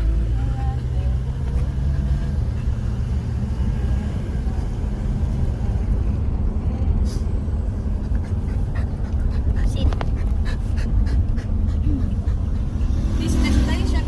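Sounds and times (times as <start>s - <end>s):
vehicle engine rumble: 0.0s - 14.0s.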